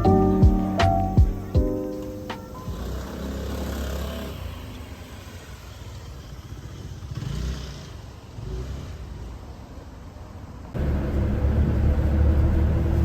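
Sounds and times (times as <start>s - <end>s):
road traffic rumble: 0.0s - 13.0s
vehicle passing: 2.0s - 9.6s.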